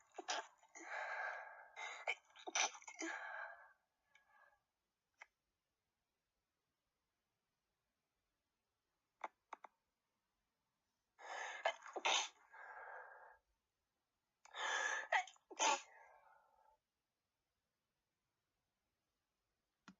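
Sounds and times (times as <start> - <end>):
person sneezing: 15.5 - 15.9.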